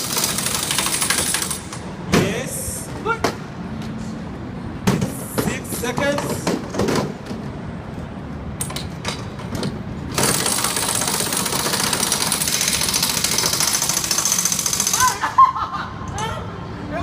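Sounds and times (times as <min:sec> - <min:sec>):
pneumatic wheel gun rattling: 0:00.0 - 0:01.9, 0:08.6 - 0:15.2
scattered clicks and knocks: 0:08.6 - 0:15.0.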